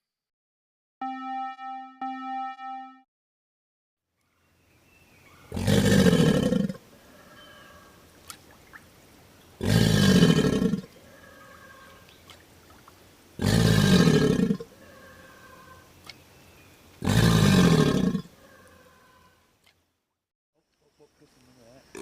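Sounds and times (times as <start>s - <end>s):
large animal roaring: 5.5s - 6.8s, 9.6s - 12.0s, 17.0s - 19.1s.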